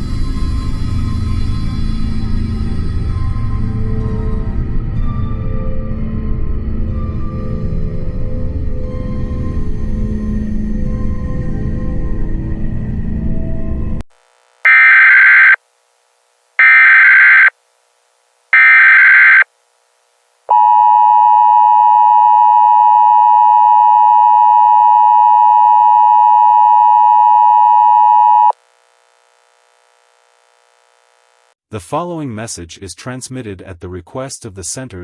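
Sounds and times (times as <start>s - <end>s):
raspy digital data screech: 14.7s - 15.6s, 16.6s - 17.5s, 18.6s - 19.4s
two-tone attention signal: 14.7s - 15.6s, 16.6s - 17.5s, 18.6s - 19.4s.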